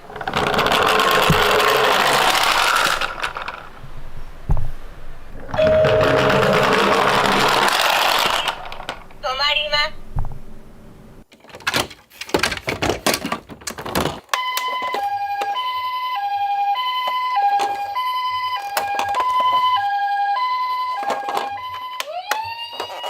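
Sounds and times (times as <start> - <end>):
two-tone ambulance siren: 5.5 - 8.7, 14.4 - 23.0.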